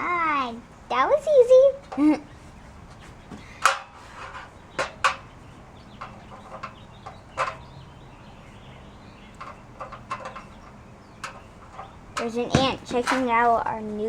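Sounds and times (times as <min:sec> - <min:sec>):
clicks and knocks of metal parts: 0:03.6 - 0:05.3, 0:05.9 - 0:07.7, 0:09.3 - 0:13.6.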